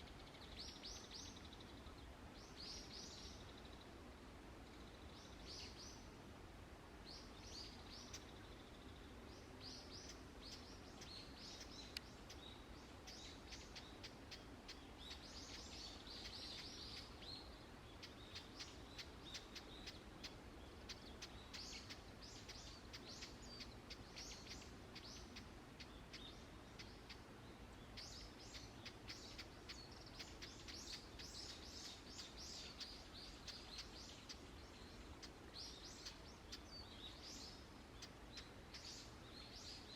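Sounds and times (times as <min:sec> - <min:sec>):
faint steady background hush: 0:00.0 - 0:39.9
wild birds chirping: 0:00.0 - 0:39.9.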